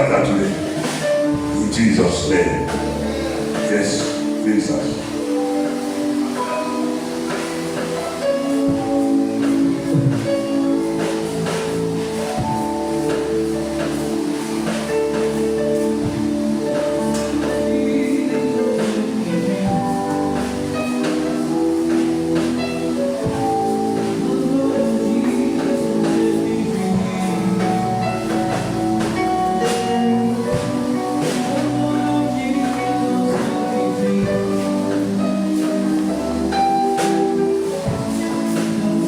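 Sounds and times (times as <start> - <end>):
drum hits: 0.0 - 18.0
instrumental worship music: 0.0 - 39.0.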